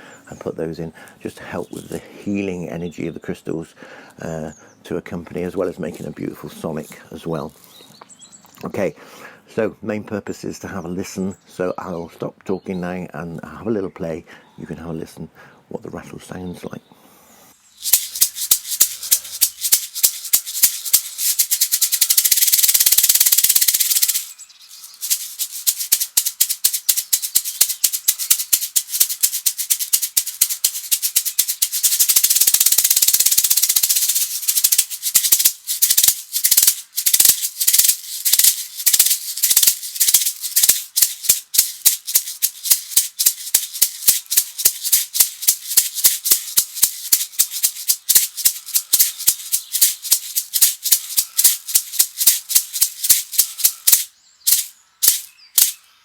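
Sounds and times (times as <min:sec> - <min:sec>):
rattle shaking: 0:17.8 - 0:55.9.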